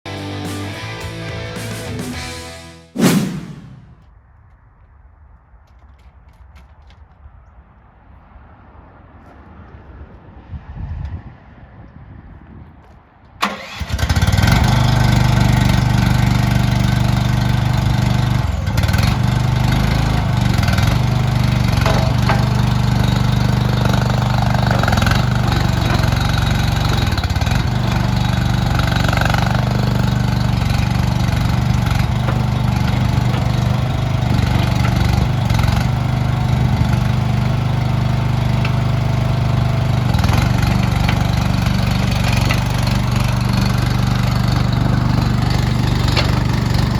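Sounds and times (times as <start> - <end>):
engine cranking and running: 13.4 - 46.9.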